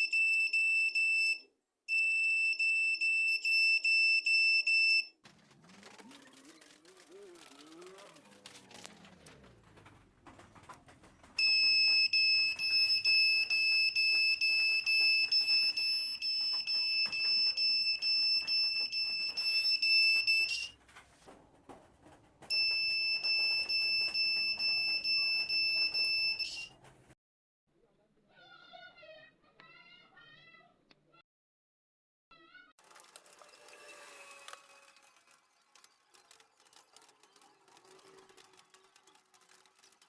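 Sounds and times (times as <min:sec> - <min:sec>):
smoke detector alarm tone: 0:00.0 - 0:05.2, 0:11.4 - 0:20.8, 0:22.5 - 0:26.7.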